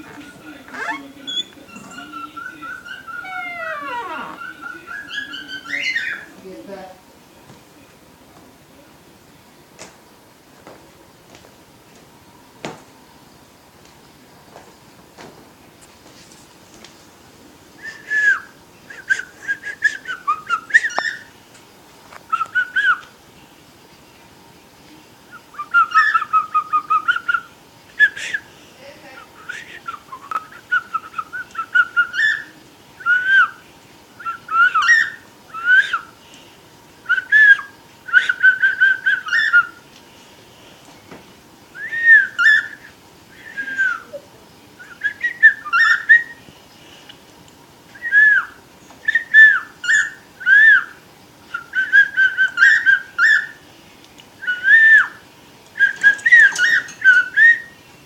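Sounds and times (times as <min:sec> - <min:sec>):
cockatiel whistling and chirping: 0:00.2 - 0:06.3, 0:17.8 - 0:21.3, 0:22.3 - 0:23.1, 0:25.3 - 0:28.4, 0:29.5 - 0:33.6, 0:34.2 - 0:36.1, 0:37.1 - 0:39.8, 0:41.8 - 0:44.1, 0:44.8 - 0:46.4, 0:47.9 - 0:53.6, 0:54.4 - 0:55.2, 0:55.8 - 0:57.7.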